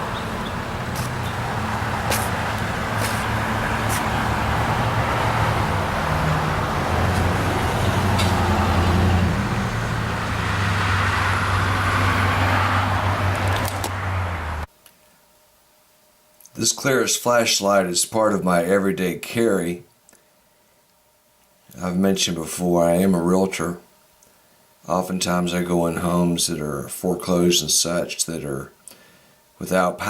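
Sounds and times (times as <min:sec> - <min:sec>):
road noise: 0:00.0 - 0:14.7
vehicle engine hum: 0:00.0 - 0:14.7.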